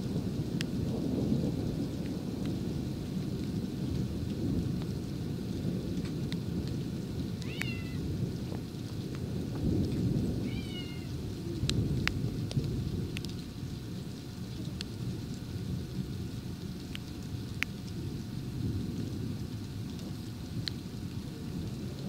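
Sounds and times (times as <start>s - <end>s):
rain: 0.0s - 22.0s
rolling thunder: 0.0s - 22.0s
cat meowing: 7.4s - 8.0s, 10.4s - 11.2s.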